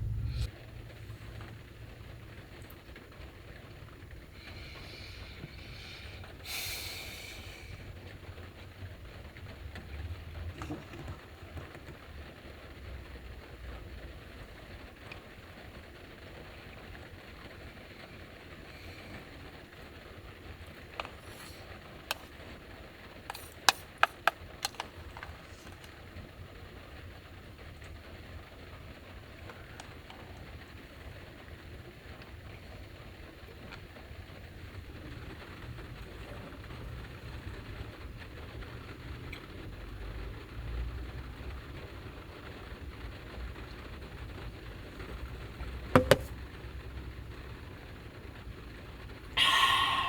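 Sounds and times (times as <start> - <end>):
deep wind gust rumble: 0.0 - 0.5
rain and wind on vehicle: 0.0 - 45.8, 46.4 - 50.0.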